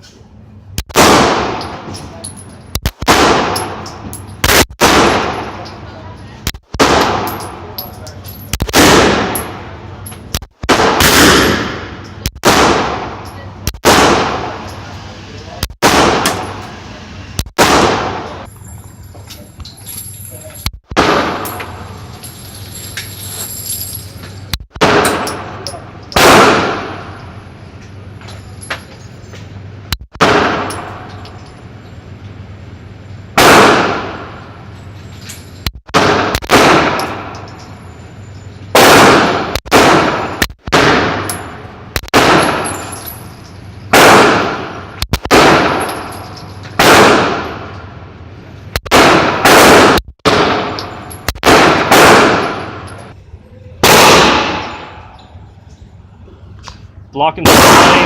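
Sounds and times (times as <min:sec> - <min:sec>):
pistol shots echoing: 0:03.0 - 0:05.8, 0:06.8 - 0:07.8, 0:08.7 - 0:09.8, 0:10.6 - 0:14.8, 0:15.8 - 0:16.6, 0:17.6 - 0:18.5, 0:20.9 - 0:21.8, 0:24.8 - 0:27.2, 0:30.2 - 0:31.1, 0:33.4 - 0:34.4, 0:36.0 - 0:37.4, 0:38.8 - 0:42.8, 0:43.9 - 0:46.2, 0:46.8 - 0:47.7, 0:48.9 - 0:52.9, 0:53.8 - 0:55.1, 0:57.4 - 0:58.0.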